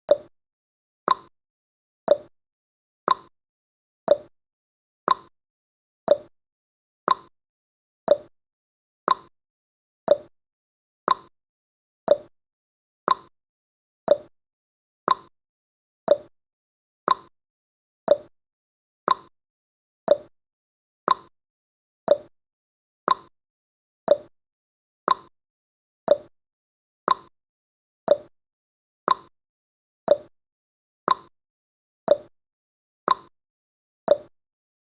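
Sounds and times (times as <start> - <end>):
timer ticking: 0.1 - 0.3, 1.1 - 1.3, 2.1 - 2.3, 3.1 - 3.3, 4.1 - 4.3, 5.1 - 5.3, 6.1 - 6.3, 7.1 - 7.3, 8.1 - 8.3, 9.1 - 9.3, 10.1 - 10.3, 11.1 - 11.3, 12.1 - 12.3, 13.1 - 13.3, 14.1 - 14.3, 15.1 - 15.3, 16.1 - 16.3, 17.1 - 17.3, 18.1 - 18.3, 19.1 - 19.3, 20.1 - 20.3, 21.1 - 21.3, 22.1 - 22.3, 23.1 - 23.3, 24.1 - 24.3, 25.1 - 25.3, 26.1 - 26.3, 27.1 - 27.3, 28.1 - 28.3, 29.1 - 29.3, 30.1 - 30.3, 31.1 - 31.3, 32.1 - 32.3, 33.1 - 33.3, 34.1 - 34.3.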